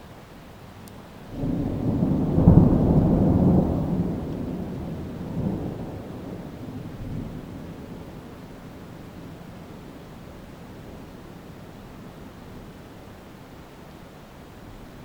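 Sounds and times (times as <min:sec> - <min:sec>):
thunder rumbling: 0:01.3 - 0:12.8.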